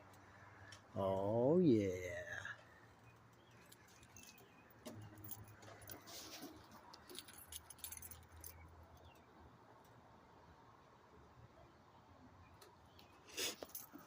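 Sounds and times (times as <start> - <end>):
light rustling: 3.3 - 8.6.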